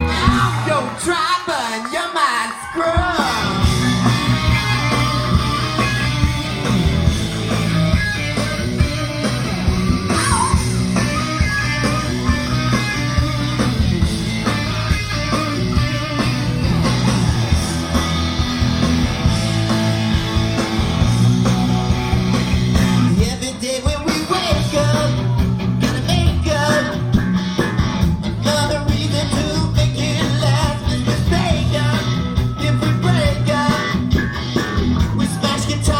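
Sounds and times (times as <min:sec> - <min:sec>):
live rock band playing: 0:00.0 - 0:35.9
person singing: 0:22.7 - 0:27.2, 0:28.2 - 0:34.1, 0:35.0 - 0:35.9.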